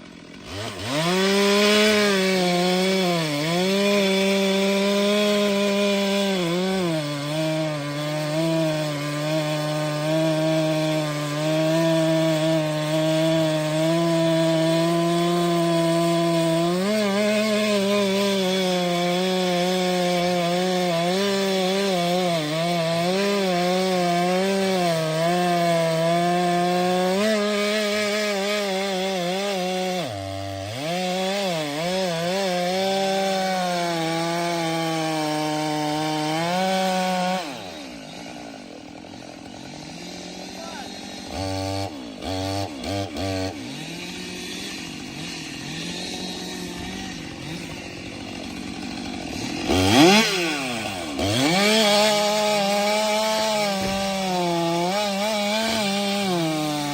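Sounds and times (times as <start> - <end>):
chainsaw cutting wood: 0.0 - 56.9.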